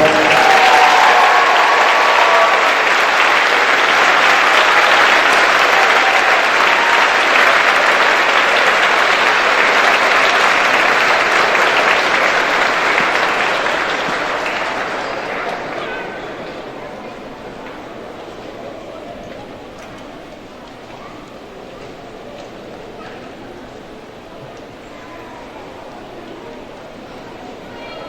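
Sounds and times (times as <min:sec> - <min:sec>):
audience applauding: 0:00.0 - 0:18.1.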